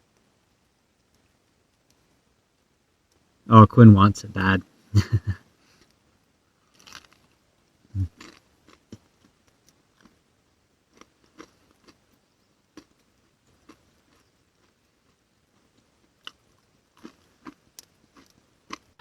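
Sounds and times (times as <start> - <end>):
food being chewed: 6.7 - 7.4, 8.0 - 10.3, 10.9 - 19.0.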